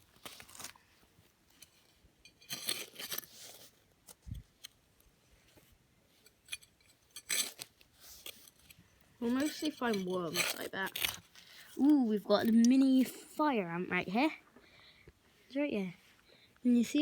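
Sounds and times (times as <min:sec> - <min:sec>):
scraping and crunching of earth: 0:00.0 - 0:05.0, 0:06.1 - 0:13.4.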